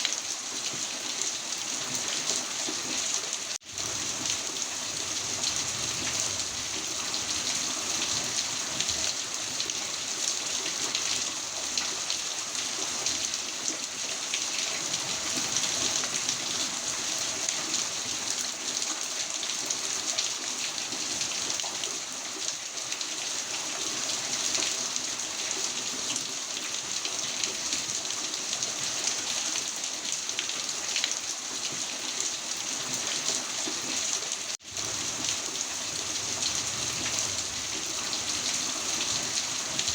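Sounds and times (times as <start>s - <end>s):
heavy rain pouring: 1.9s - 18.6s, 32.9s - 39.9s.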